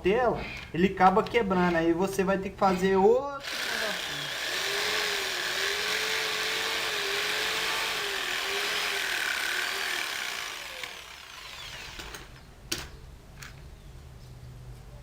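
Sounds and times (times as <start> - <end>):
electric jigsaw cutting hardboard: 3.4 - 12.3.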